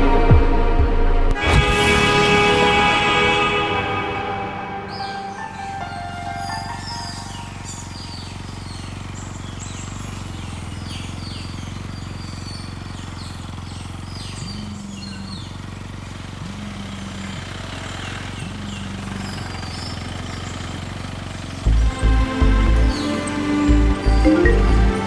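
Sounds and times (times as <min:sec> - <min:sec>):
low hum: 0:00.0 - 0:09.2, 0:21.7 - 0:25.0
birds chirping: 0:04.2 - 0:25.0
low held tones: 0:23.6 - 0:25.0.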